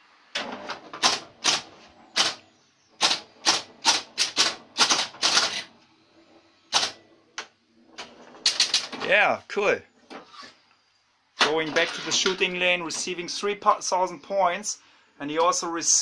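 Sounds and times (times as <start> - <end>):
pinball machine mechanical clacks: 3.0 - 5.7.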